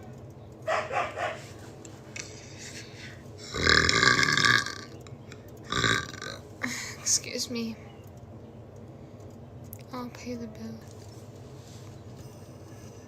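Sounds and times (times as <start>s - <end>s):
woman belching: 3.4s - 5.0s, 5.7s - 6.4s.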